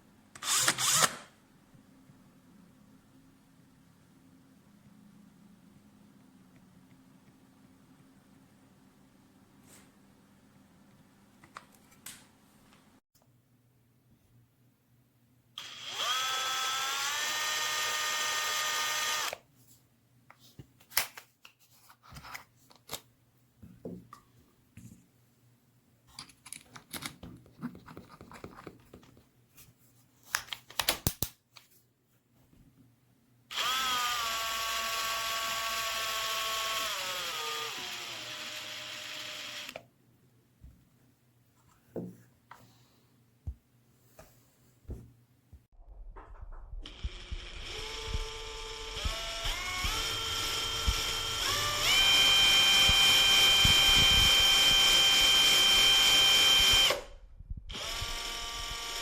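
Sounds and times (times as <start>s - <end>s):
cordless drill motor whining: 0.4s - 1.1s, 15.6s - 19.4s, 33.5s - 39.8s, 46.9s - 57.1s, 57.7s - 59.0s.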